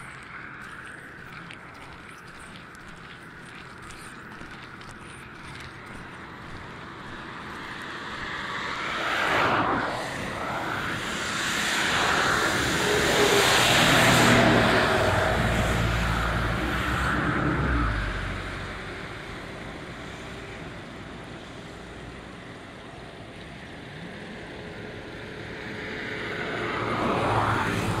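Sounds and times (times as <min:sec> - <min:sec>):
car passing on wet street: 0:06.8 - 0:21.1, 0:24.7 - 0:28.0.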